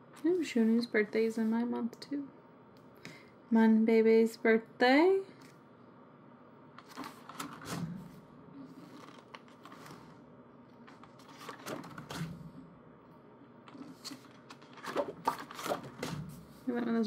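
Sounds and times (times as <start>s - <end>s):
paper pages flipping: 6.8s - 12.4s, 13.7s - 16.4s.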